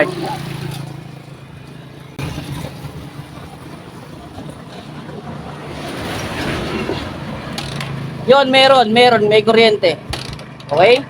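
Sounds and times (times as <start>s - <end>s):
motorcycle engine cranking: 6.2s - 8.6s, 9.2s - 11.0s.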